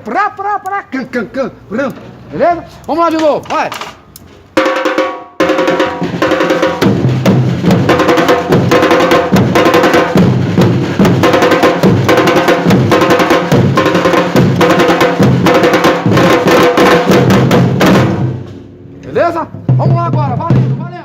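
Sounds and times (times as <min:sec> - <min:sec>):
percussion group drumming: 0:04.6 - 0:18.5, 0:19.5 - 0:21.0
deep bass-drum beats: 0:05.5 - 0:18.4, 0:19.2 - 0:21.0.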